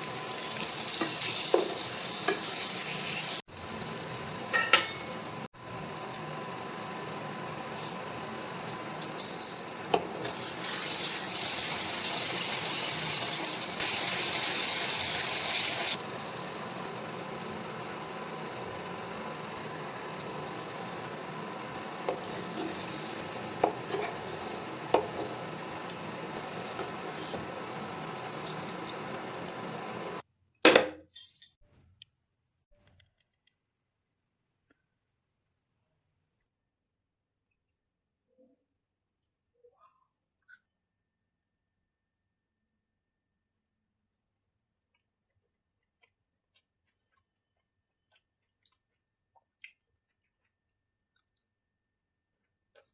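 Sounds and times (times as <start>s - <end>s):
food sizzling in a pan: 0.0s - 30.2s
utensil clinking against pan: 4.5s - 5.2s.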